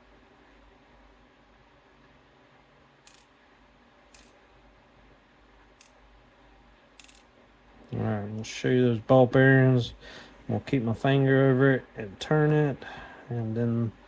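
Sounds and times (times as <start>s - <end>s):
small metal lock parts clicking: 7.0s - 7.3s.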